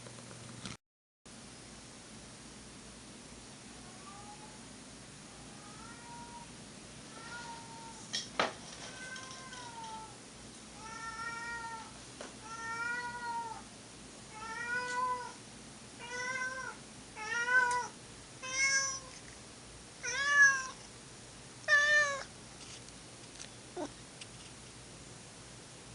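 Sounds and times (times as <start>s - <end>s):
cat meowing: 10.8s - 13.6s, 16.0s - 19.2s, 20.0s - 20.8s, 21.7s - 22.3s.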